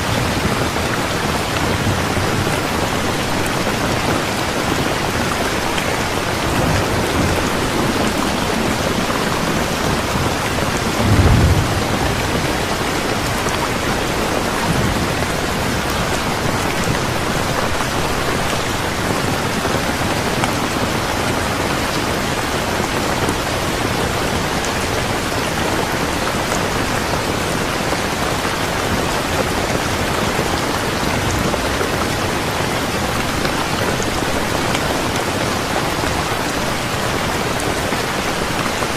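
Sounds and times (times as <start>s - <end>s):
steady rain: 0.0s - 38.9s
low rumble of thunder: 5.0s - 17.9s.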